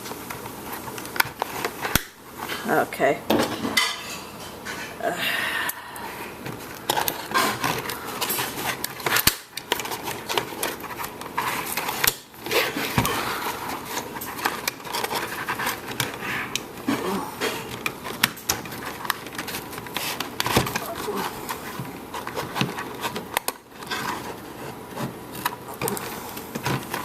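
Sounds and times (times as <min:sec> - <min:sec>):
packaging rustling and scraping: 0:00.0 - 0:02.9, 0:06.1 - 0:27.0
sharp plastic snaps: 0:00.9 - 0:02.2.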